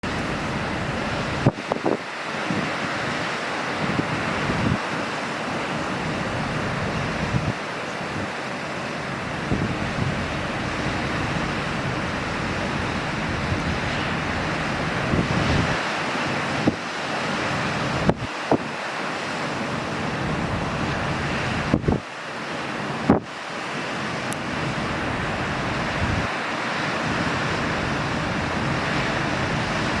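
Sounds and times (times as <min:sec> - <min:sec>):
wind buffeting microphone: 0:00.0 - 0:08.4, 0:09.0 - 0:18.8, 0:19.8 - 0:22.1, 0:24.2 - 0:30.0
ocean surf roar: 0:00.0 - 0:30.0.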